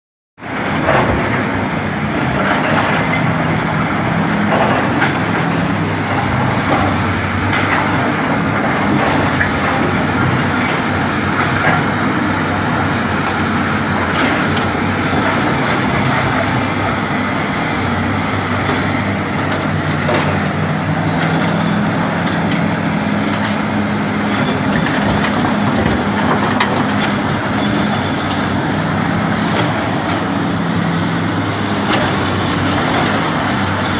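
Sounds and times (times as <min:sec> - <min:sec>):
excavator diesel engine running: 0:00.4 - 0:33.9.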